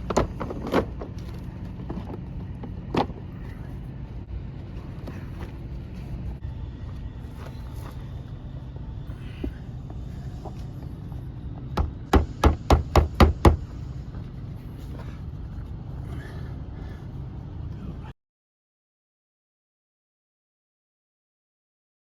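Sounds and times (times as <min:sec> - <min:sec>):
low rumble: 0:00.0 - 0:12.4
hammer striking: 0:11.8 - 0:13.7.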